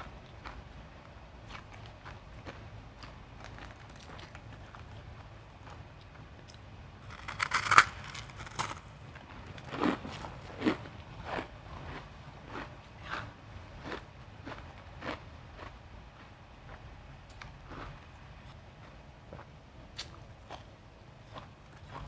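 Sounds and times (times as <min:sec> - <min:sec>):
chewing crunchy ice: 0:06.5 - 0:15.8, 0:19.4 - 0:22.0.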